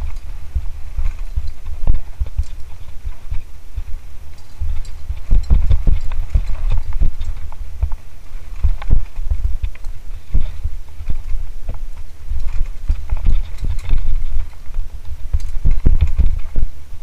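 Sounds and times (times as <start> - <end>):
bike knocks and rattles: 0.0 - 16.7
wind rumble on microphone: 0.0 - 17.0.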